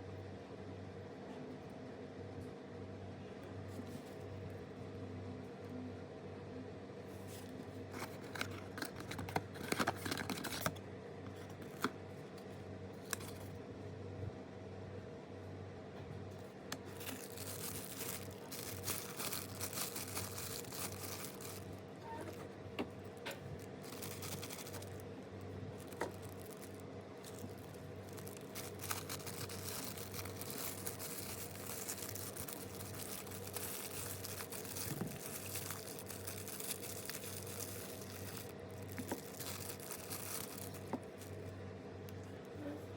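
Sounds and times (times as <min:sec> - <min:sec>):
faint steady hum: 0:00.0 - 0:42.9
plastic and foil wrappers crinkling: 0:07.1 - 0:11.9, 0:13.0 - 0:13.6, 0:16.7 - 0:41.6.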